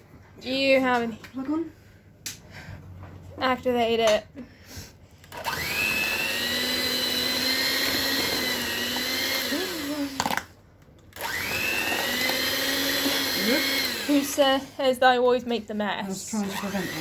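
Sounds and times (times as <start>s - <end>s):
electric food mixer whining: 5.2s - 10.5s, 11.1s - 14.8s, 16.4s - 17.0s.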